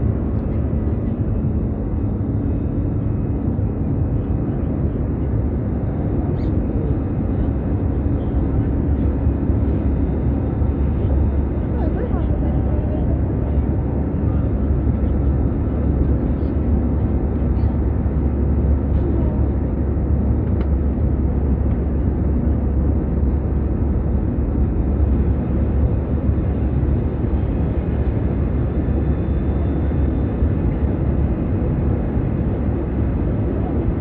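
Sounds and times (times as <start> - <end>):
airliner cabin rumble: 0.0 - 34.0.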